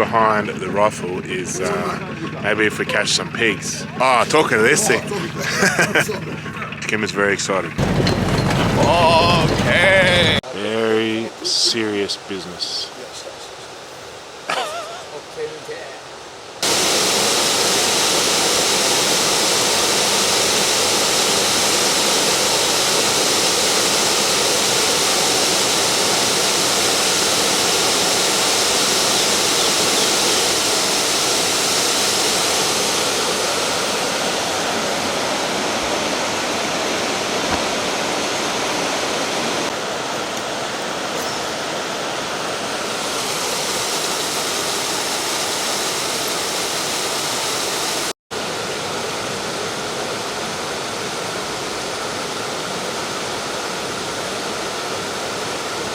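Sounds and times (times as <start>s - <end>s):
river water rushing over rocks: 18.9s - 55.9s.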